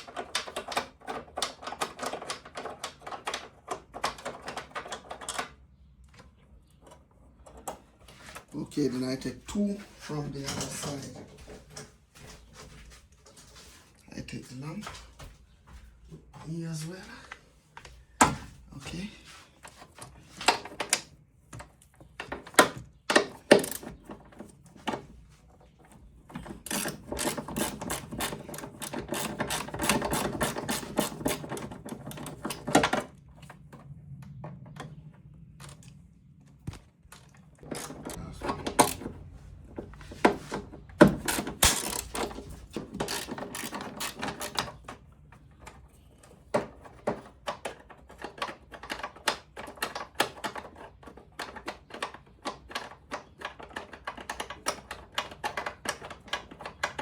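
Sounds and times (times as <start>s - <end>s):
ratchet wrench clicking: 41.3s - 42.3s, 43.0s - 44.6s.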